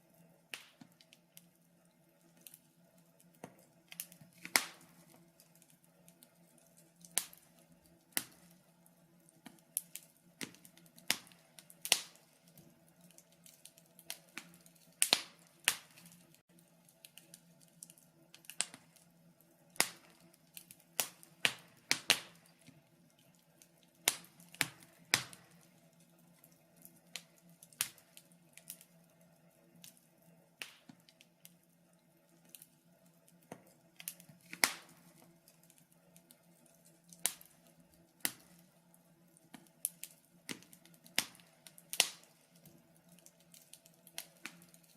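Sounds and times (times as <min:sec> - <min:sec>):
wood fire crackling: 0:00.0 - 0:44.9.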